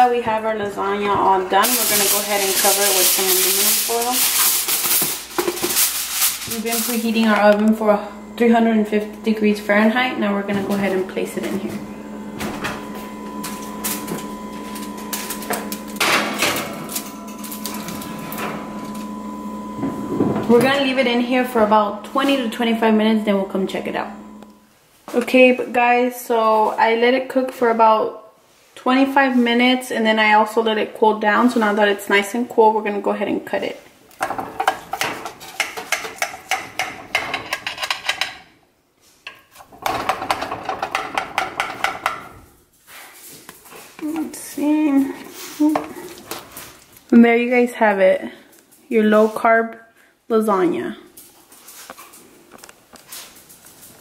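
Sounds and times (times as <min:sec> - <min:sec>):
steady electric hum: 0:00.0 - 0:27.3
oven door shutting: 0:07.2 - 0:22.8
baking dish clicking and knocking: 0:34.2 - 0:38.4, 0:39.3 - 0:42.4.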